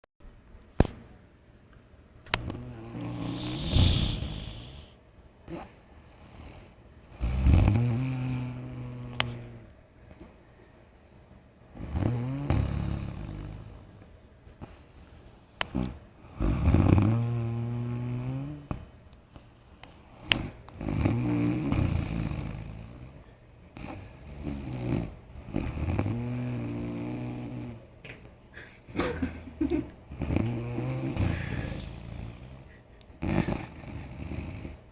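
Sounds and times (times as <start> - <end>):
person snoring: 2.4 - 5.0, 30.2 - 34.6.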